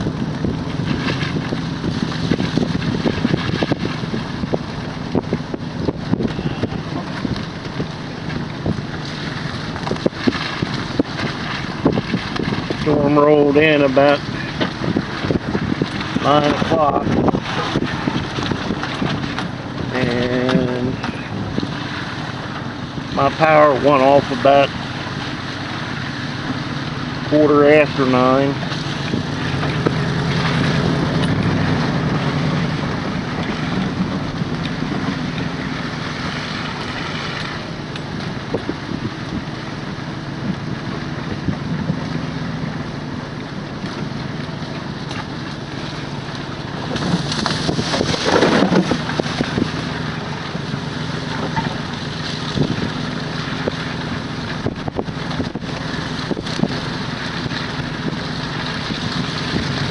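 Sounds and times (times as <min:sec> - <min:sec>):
vehicle engine humming: 0:00.0 - 0:59.9
wind rushing: 0:14.2 - 0:23.6.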